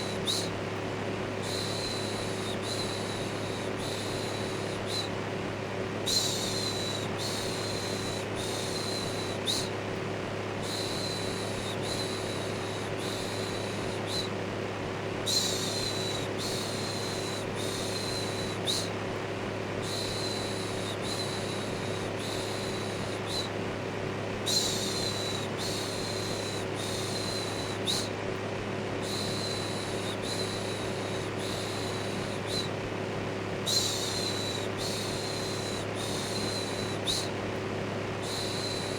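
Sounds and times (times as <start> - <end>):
electric fan humming: 0.0 - 38.9.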